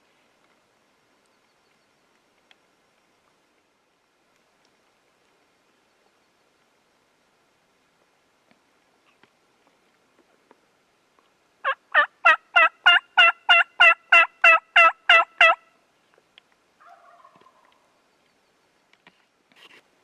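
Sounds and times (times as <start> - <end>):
turkey yelping: 11.6 - 15.7, 16.8 - 17.7.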